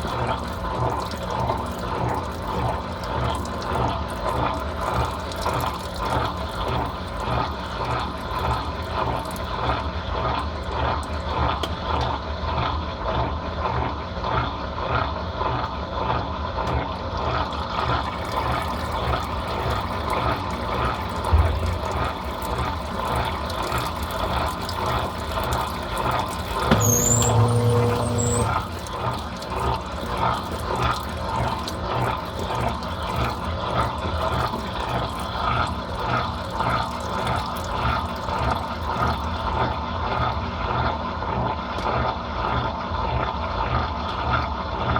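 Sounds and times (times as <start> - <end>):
washing machine agitating: 0.0 - 15.1, 15.9 - 44.9
water sloshing: 18.4 - 39.4.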